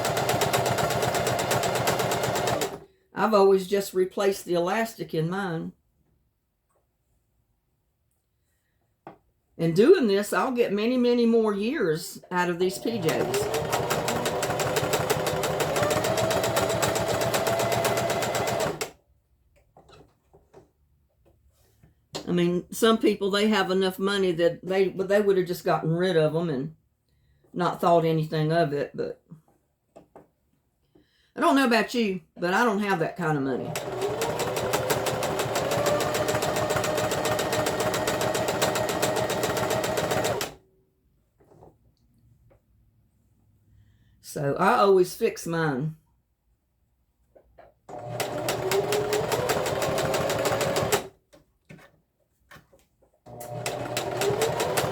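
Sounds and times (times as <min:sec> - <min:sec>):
sewing machine stitching: 0:00.0 - 0:02.9, 0:12.3 - 0:19.0, 0:33.5 - 0:40.6, 0:47.9 - 0:51.2, 0:53.3 - 0:54.9.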